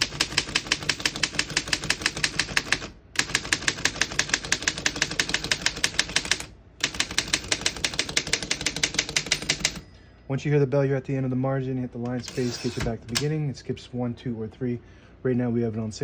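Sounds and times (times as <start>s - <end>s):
manual typewriter keystrokes: 0.0s - 9.8s, 12.1s - 13.3s.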